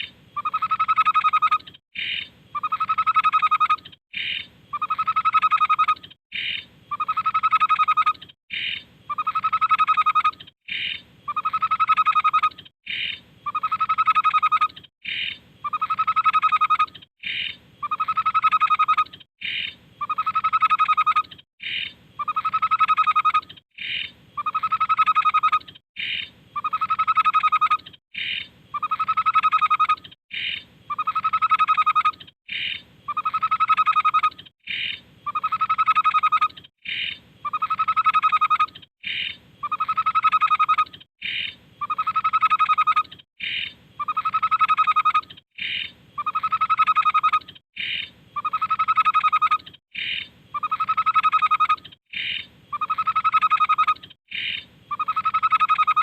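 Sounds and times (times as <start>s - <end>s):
babbler song: 15.6s - 56.0s.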